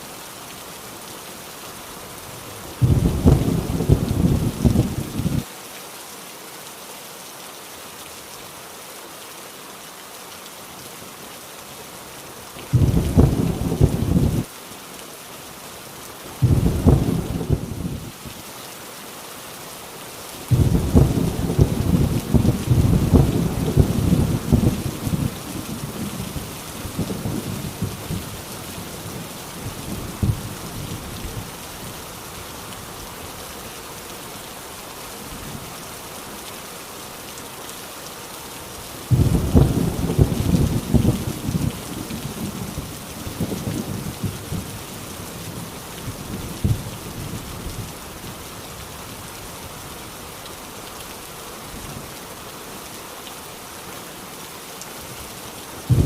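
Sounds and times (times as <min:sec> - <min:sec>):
heavy rain falling: 0:00.0 - 0:56.0
thunder rumbling: 0:02.8 - 0:05.4, 0:12.8 - 0:14.5, 0:16.4 - 0:18.1, 0:20.5 - 0:31.5, 0:39.1 - 0:44.8.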